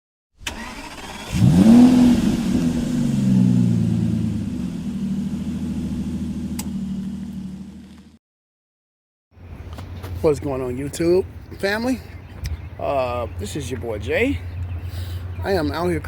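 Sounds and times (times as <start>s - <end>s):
car engine starting and revving: 0.4s - 8.1s.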